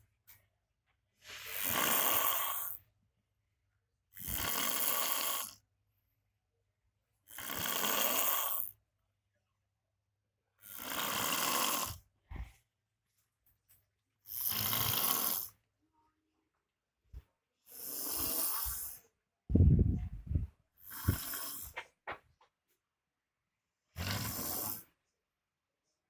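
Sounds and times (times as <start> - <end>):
low snort: 1.2 - 2.8, 10.6 - 12.5, 14.3 - 15.6, 17.7 - 19.0, 20.8 - 21.8, 24.0 - 24.9
man snoring loudly: 1.5 - 2.7, 4.2 - 5.6, 7.3 - 8.7, 10.6 - 12.0, 14.3 - 15.5, 17.7 - 19.0, 24.0 - 24.9.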